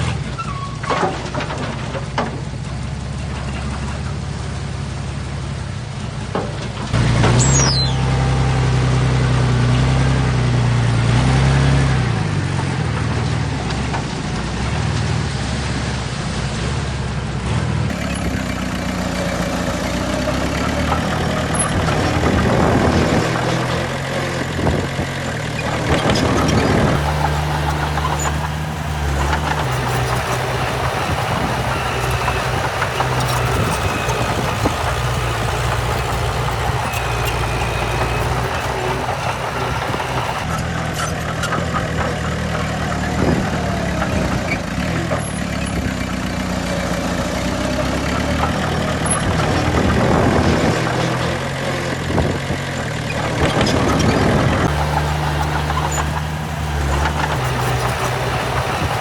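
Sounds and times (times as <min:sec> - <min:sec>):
diesel machinery running: 0:26.8 - 0:40.5, 0:54.7 - 0:59.0.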